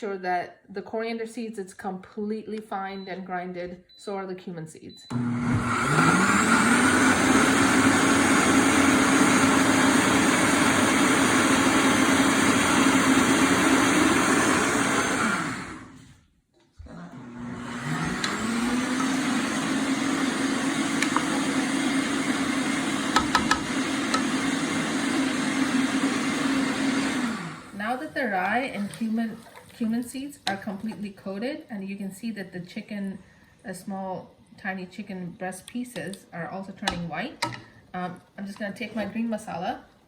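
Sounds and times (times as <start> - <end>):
electric blender grinding: 5.1 - 16.2, 16.8 - 28.0.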